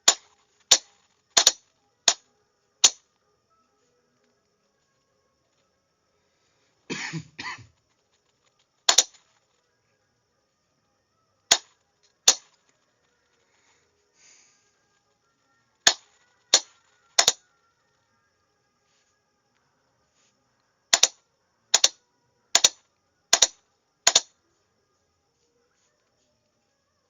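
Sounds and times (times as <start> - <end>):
sharp clicks: 0.0 - 3.2, 7.8 - 9.6, 11.4 - 13.4, 15.8 - 17.5, 20.9 - 24.3.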